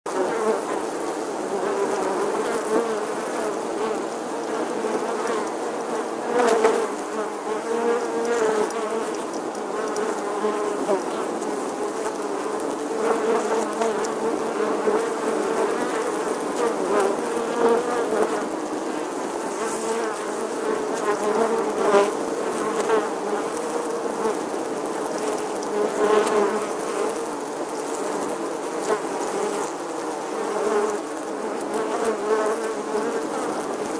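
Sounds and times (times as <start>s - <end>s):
honeybees buzzing: 0.1s - 33.9s.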